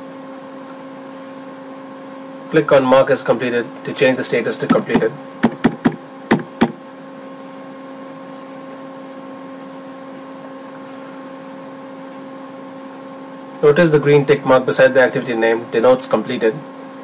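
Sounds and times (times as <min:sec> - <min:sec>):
steady hum with whine: 0:00.0 - 0:17.0
short knocks: 0:04.7 - 0:06.8.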